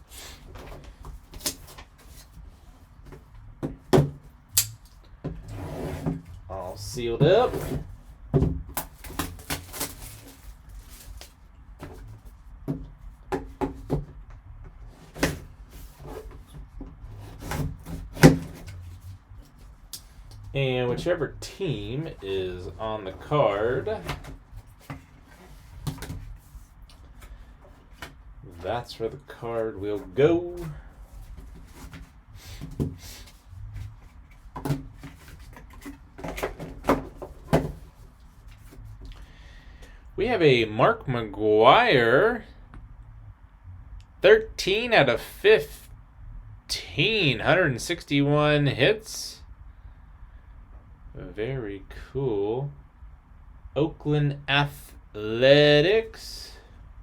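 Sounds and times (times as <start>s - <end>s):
cardboard and plastic wrap handling: 8.8s - 12.5s.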